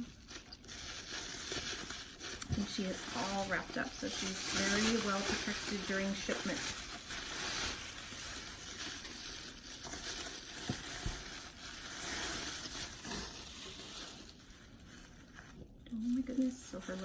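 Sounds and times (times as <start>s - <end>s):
tissue paper rustling: 0.0s - 17.0s.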